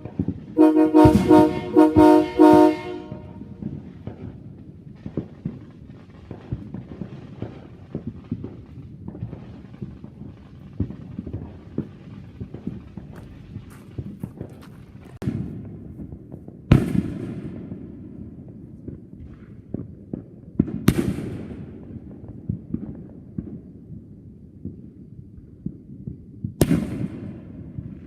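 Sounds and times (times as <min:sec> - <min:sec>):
fireworks bangs with echo: 0:00.0 - 0:28.0
fireworks pops and crackles: 0:00.0 - 0:28.0.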